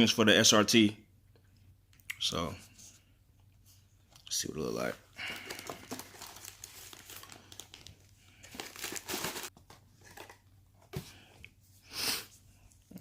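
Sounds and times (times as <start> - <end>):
packaging crinkling and tearing: 5.2 - 10.4.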